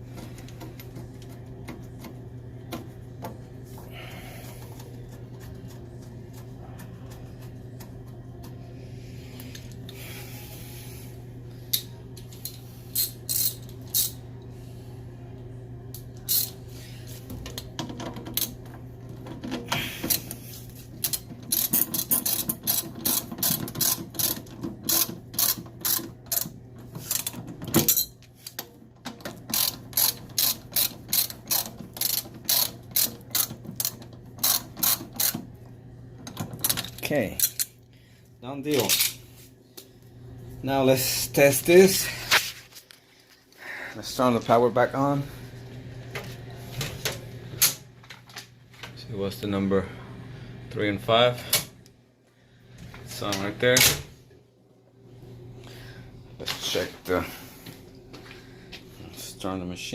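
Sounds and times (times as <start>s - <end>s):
steady low hum: 0.0s - 59.9s
ratchet wrench clicking: 21.0s - 27.3s, 29.5s - 35.4s.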